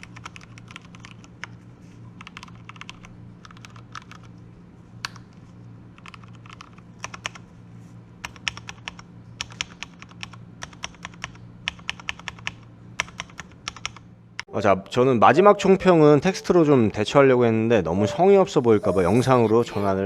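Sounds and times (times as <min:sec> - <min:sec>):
mechanical keyboard typing: 0:00.0 - 0:01.5, 0:02.2 - 0:04.3, 0:06.0 - 0:07.4, 0:08.2 - 0:14.0.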